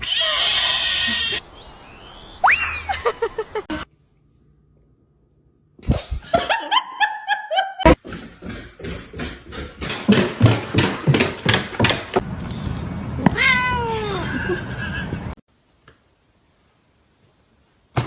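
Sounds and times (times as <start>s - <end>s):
cat meowing: 13.3s - 14.2s.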